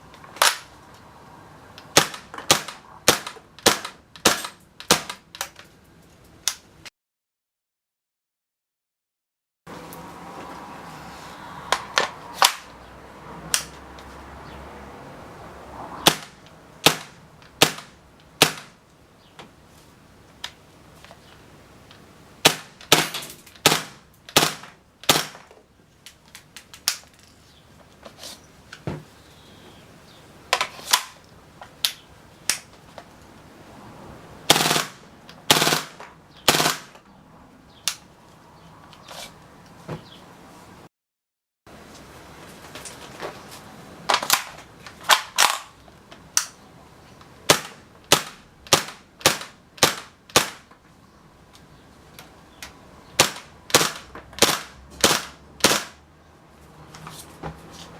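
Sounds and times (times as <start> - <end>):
airsoft gun shots: 1.9 - 5.2, 16.0 - 18.8, 22.4 - 25.4, 34.5 - 37.0, 47.5 - 50.6, 53.2 - 56.0.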